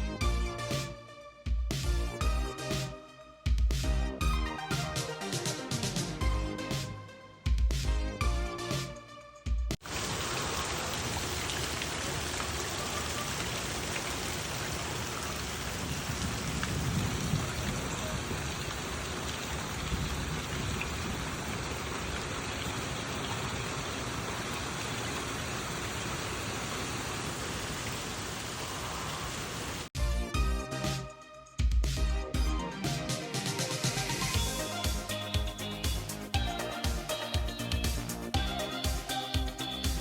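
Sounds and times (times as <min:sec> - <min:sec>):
steady rain falling: 0:09.8 - 0:29.9.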